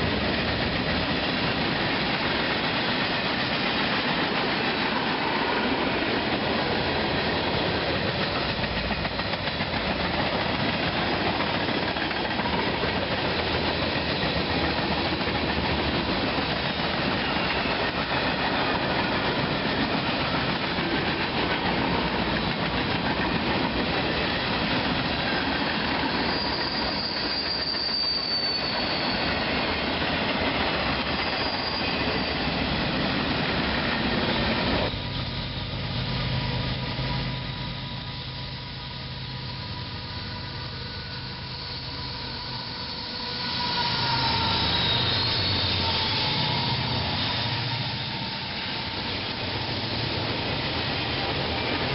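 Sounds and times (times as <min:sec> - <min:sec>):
train wheels rumbling and rattling: 0:00.0 - 0:51.9
high-pitched wheel squeal: 0:26.0 - 0:29.7, 0:31.0 - 0:32.8, 0:40.0 - 0:49.2.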